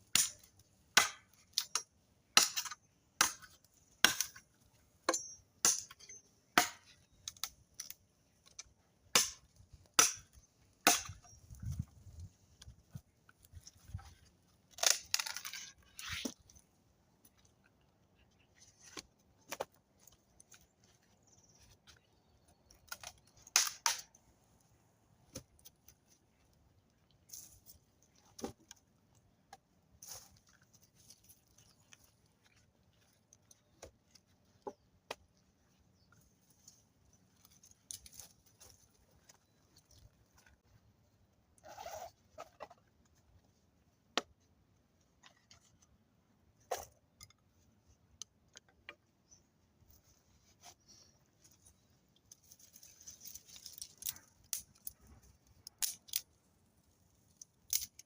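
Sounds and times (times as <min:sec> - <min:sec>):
clicks snaps and rustles: 0:12.5 - 0:16.6, 0:21.8 - 0:24.2, 0:37.4 - 0:40.6, 0:51.5 - 0:56.4, 0:57.2 - 0:58.0.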